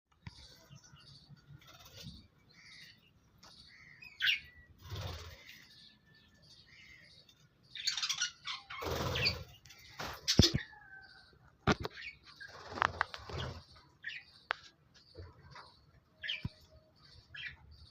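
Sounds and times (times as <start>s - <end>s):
budgerigars chirping: 2.5s - 11.1s
wings fluttering: 4.8s - 5.6s, 8.7s - 10.6s, 11.7s - 13.8s.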